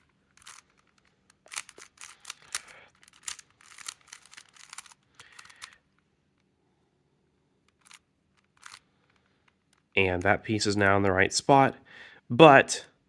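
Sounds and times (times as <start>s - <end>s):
puzzle cube clicking turns: 0.0s - 6.0s, 7.6s - 10.4s.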